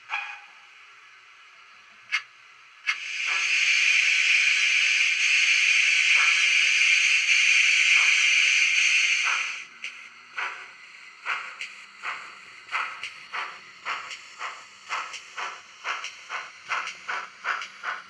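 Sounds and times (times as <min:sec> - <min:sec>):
soft steam puffs: 0:02.7 - 0:18.0
steam hiss: 0:02.8 - 0:18.0
sharp click: 0:11.3 - 0:18.0.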